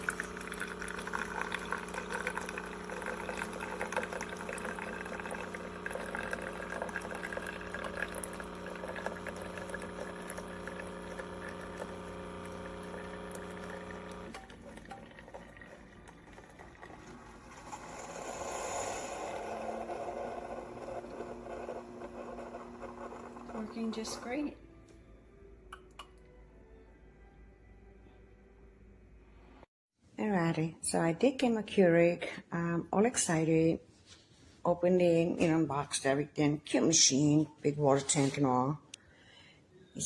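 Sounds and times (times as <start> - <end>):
water gurgling and trickling: 0.0 - 17.9
water pump humming: 0.0 - 24.0.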